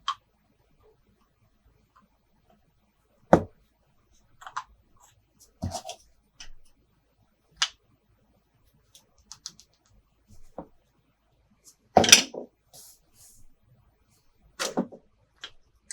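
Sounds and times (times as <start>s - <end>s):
plastic toy pieces knocking: 12.0s - 12.5s.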